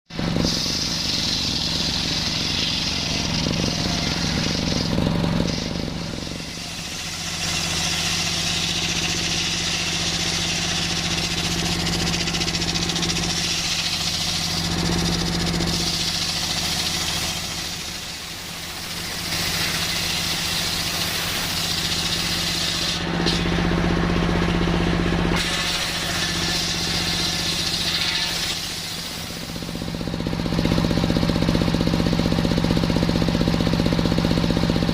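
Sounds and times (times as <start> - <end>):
sawmill machine drone: 0.1 - 34.9
saw blade rasping in wood: 0.2 - 23.6, 25.3 - 29.9.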